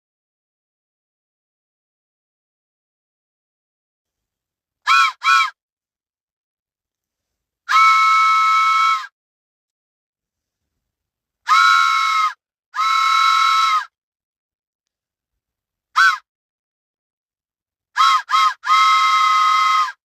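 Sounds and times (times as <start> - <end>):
train whistle blasts: 7.7 - 9.1, 18.0 - 19.8.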